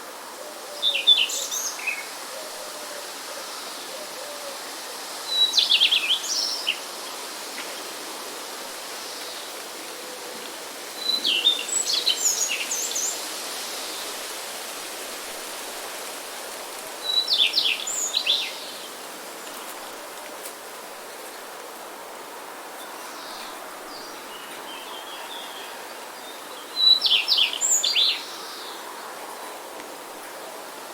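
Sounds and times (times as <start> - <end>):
background hiss: 0.0 - 30.9
songbird chirping: 16.9 - 20.5, 22.7 - 30.4.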